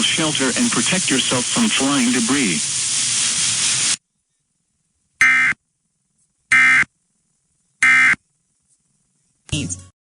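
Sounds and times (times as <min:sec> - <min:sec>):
broadcast hiss: 0:00.0 - 0:04.0
buzzy digital data tones: 0:00.0 - 0:04.0.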